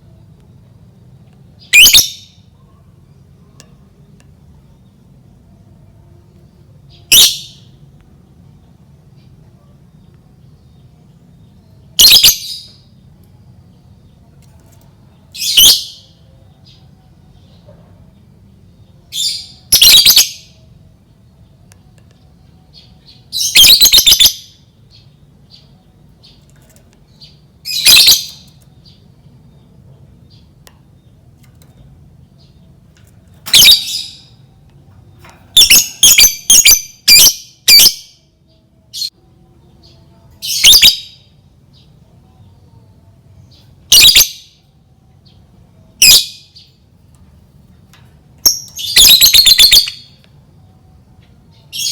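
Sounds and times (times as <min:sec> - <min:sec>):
lovebird shrill chattering: 0:01.7 - 0:02.2, 0:12.0 - 0:12.5, 0:19.7 - 0:20.4, 0:23.4 - 0:24.4, 0:27.7 - 0:28.5, 0:33.5 - 0:34.3, 0:35.6 - 0:38.0, 0:40.5 - 0:41.2, 0:43.9 - 0:44.3, 0:48.4 - 0:50.0.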